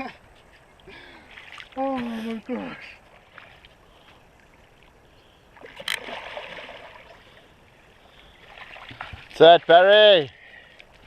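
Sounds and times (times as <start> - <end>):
faint background water: 0.0 - 11.0
water splash: 5.6 - 7.2.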